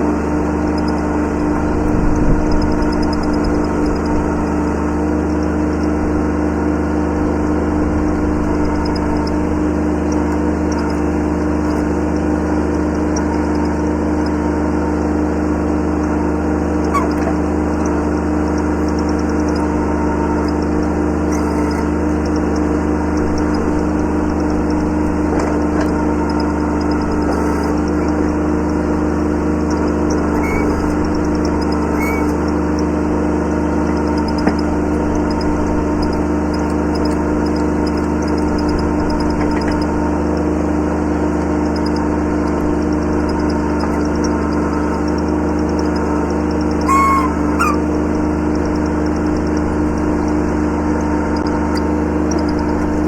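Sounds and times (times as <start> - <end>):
tractor diesel engine running: 0.0 - 53.0
short high squeaks: 16.1 - 53.0.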